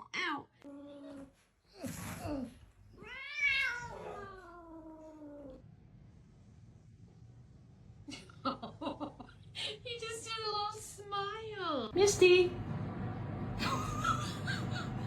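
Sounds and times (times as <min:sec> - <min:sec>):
cat meowing: 0:03.0 - 0:05.6.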